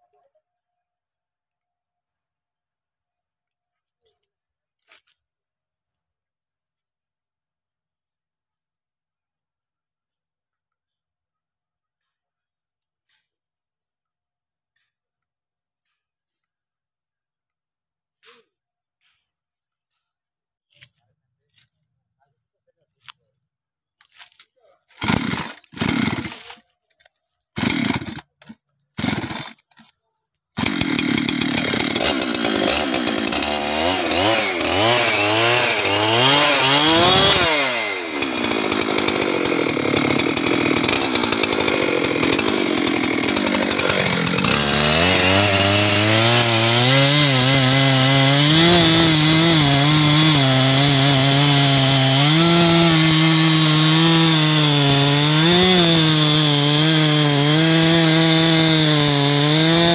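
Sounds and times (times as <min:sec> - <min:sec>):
chainsaw revving and cutting wood: 0:24.1 - 0:59.9.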